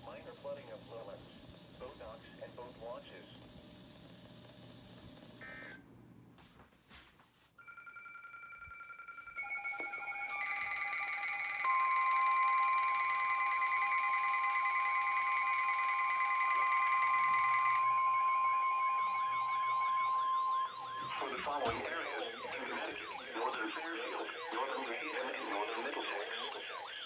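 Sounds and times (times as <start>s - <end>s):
steady electronic alert tones: 7.6s - 27.0s
loud steady tone: 8.6s - 27.0s
warbling siren tone: 9.1s - 27.0s.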